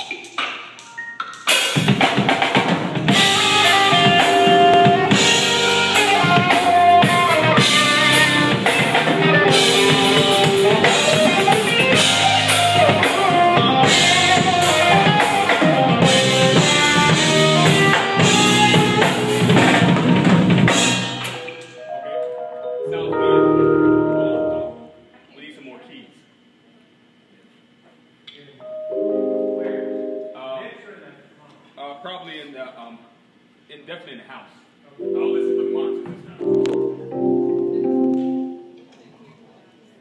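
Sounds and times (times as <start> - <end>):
loud music with drum kit: 0.0 - 21.8
held pitched notes: 3.0 - 25.1, 28.6 - 30.7, 35.0 - 38.8.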